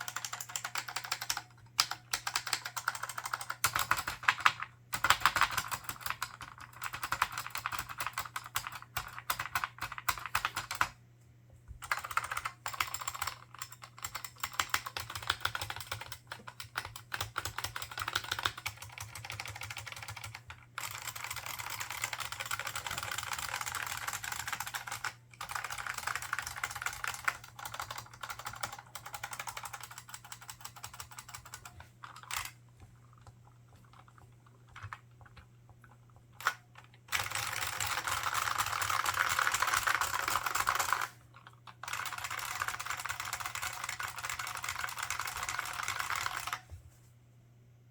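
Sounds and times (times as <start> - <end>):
fast typing key clicks: 0.0 - 10.9, 11.8 - 32.6, 36.4 - 41.2, 41.8 - 46.6.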